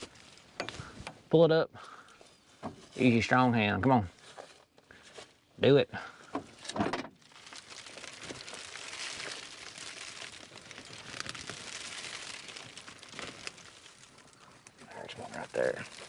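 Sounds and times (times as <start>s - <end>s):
beans spilling crackling patter: 7.2s - 16.0s.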